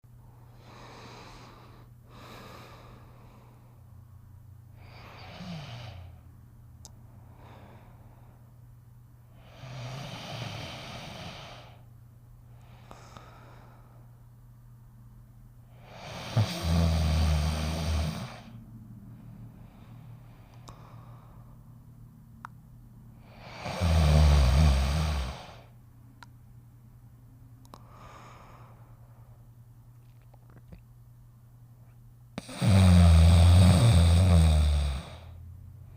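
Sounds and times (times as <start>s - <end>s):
steady low hum: 0.0s - 35.9s
cartoon snoring and breathing: 15.8s - 18.6s, 23.3s - 25.7s, 32.4s - 35.4s.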